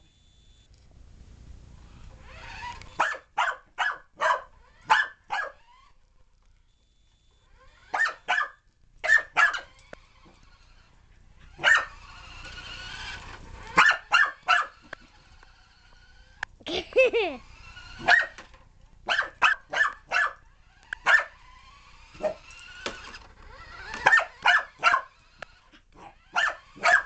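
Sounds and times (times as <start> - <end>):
puppy barking: 3.0 - 5.7, 7.9 - 9.7, 11.5 - 12.0, 13.7 - 14.8, 18.0 - 18.4, 19.0 - 21.4, 22.2 - 22.5, 23.9 - 25.2, 26.0 - 27.0.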